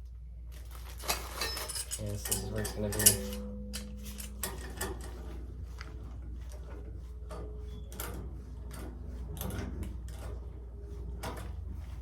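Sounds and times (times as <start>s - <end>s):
steady low hum: 0.0s - 12.0s
metal fittings clicking and scraping: 1.0s - 10.6s.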